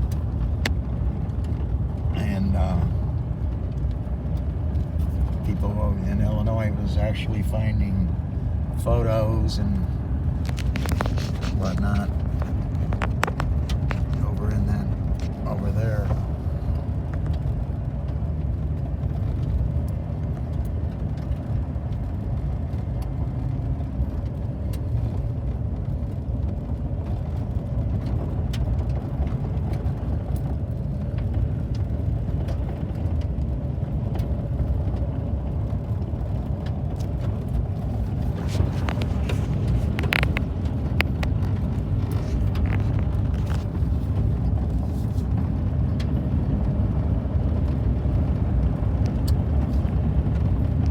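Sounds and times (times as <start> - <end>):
car engine and road noise: 0.0 - 50.9
clicks and rattles: 10.4 - 14.3, 36.3 - 45.5.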